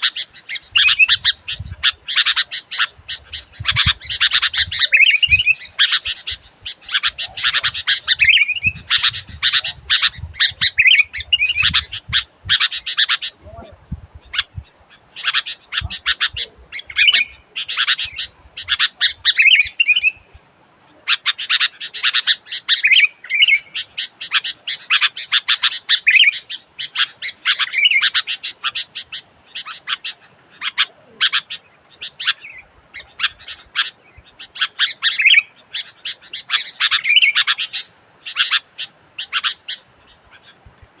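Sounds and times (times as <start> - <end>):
bird calling with sharp chips: 21.0 - 41.0.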